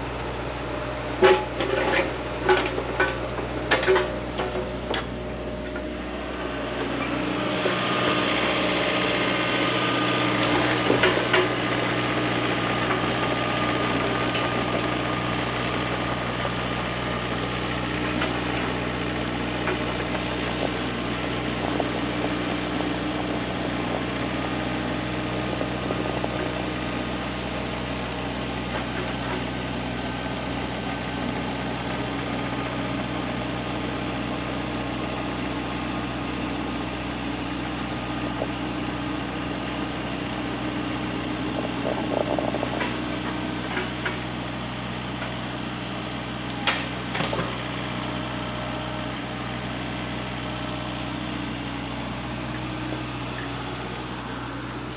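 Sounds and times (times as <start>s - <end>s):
heavy equipment engine running: 0.0s - 54.9s.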